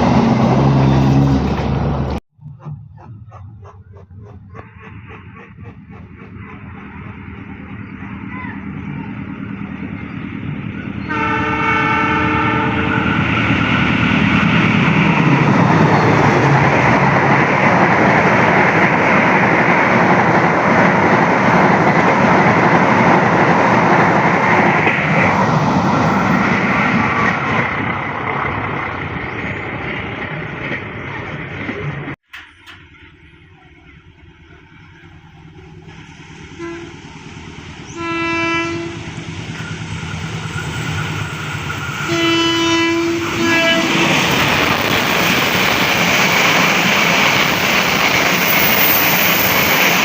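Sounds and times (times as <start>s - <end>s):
train passing rolling noise: 0.0s - 50.0s
train horn blast: 11.0s - 13.7s, 36.5s - 37.1s, 37.9s - 39.2s, 42.0s - 44.4s.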